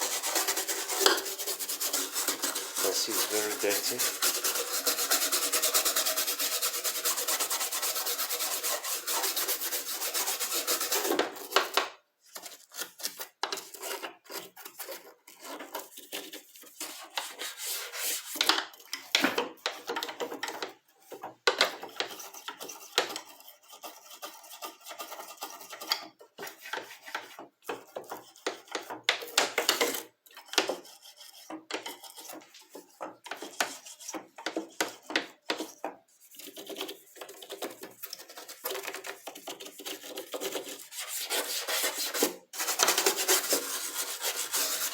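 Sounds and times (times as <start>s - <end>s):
brush scrubbing speaker grille: 0.0s - 11.1s, 36.2s - 44.9s.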